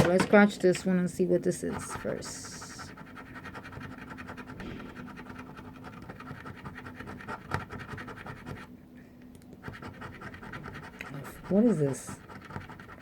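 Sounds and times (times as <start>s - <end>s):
scratch card scraping: 1.7s - 8.7s, 9.6s - 13.0s.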